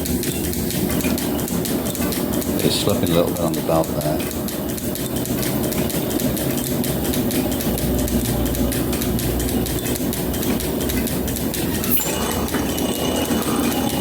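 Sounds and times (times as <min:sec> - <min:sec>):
planer rapid clatter: 0:00.0 - 0:14.0
metal planer machine drone: 0:11.6 - 0:14.0.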